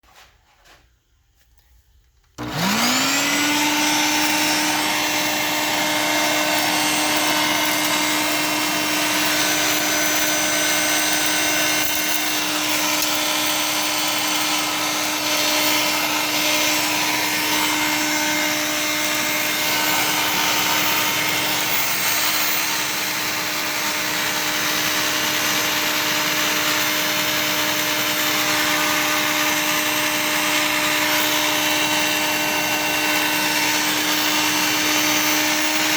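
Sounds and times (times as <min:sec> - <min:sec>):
handheld vacuum whining: 0:02.2 - 0:35.9.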